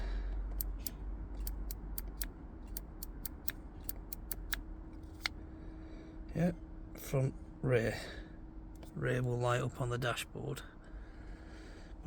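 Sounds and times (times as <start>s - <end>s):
small sharp clicks: 0.5s - 5.4s.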